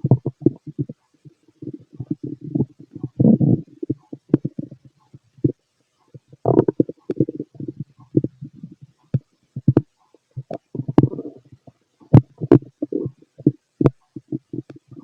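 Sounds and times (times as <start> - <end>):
stomach gurgling through stethoscope: 0.0 - 15.0.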